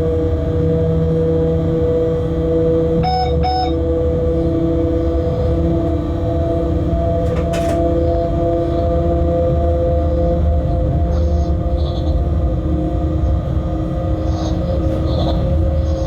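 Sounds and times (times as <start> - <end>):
locomotive running rumble: 0.0 - 16.0
electrical hum: 0.2 - 16.0
short beeps: 3.0 - 3.8.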